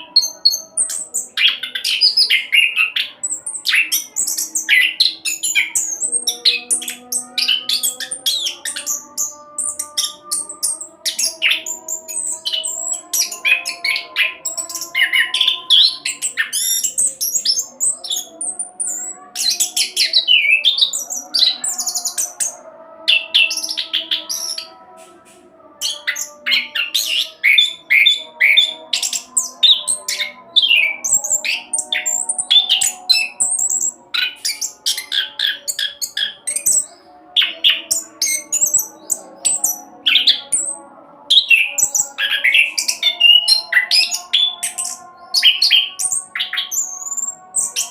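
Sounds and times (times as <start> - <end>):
thrush singing: 0.0 - 47.9.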